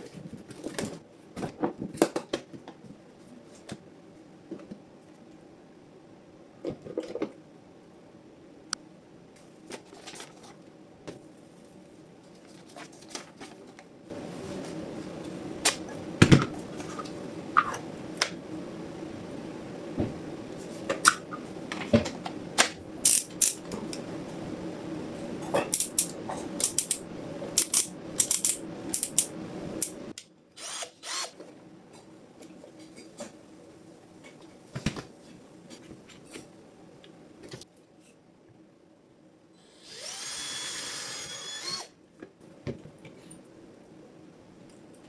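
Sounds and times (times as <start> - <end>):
power drill motor running: 30.6 - 31.4, 39.6 - 41.9.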